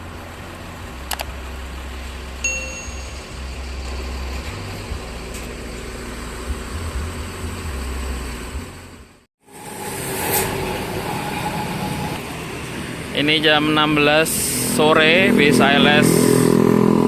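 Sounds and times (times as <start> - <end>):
bus engine low rumble: 0.0 - 9.3.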